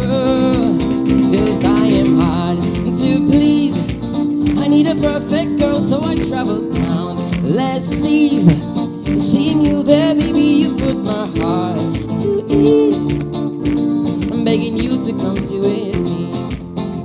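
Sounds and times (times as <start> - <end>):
person singing: 0.0 - 3.9, 4.6 - 13.3, 14.3 - 16.6
guitar: 0.0 - 17.0
sustained instrumental accompaniment: 8.1 - 10.2.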